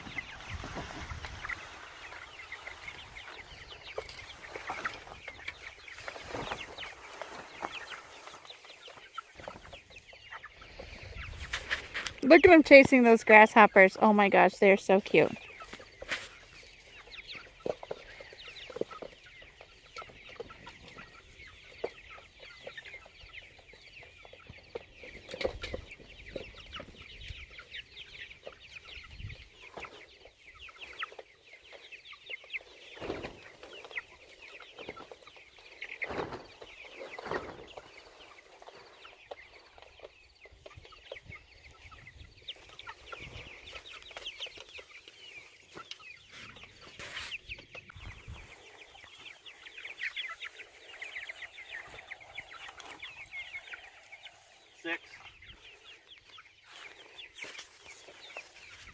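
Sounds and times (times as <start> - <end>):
chickens peeping and clucking: 0.0 - 58.9.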